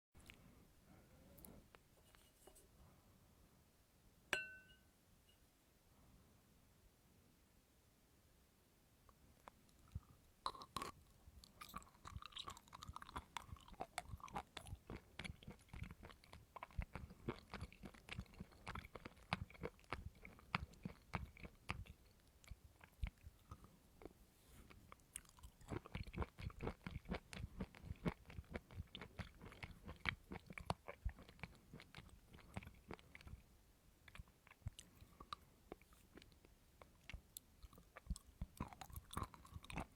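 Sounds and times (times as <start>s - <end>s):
crunchy chewing: 9.7s - 33.5s, 34.1s - 39.9s.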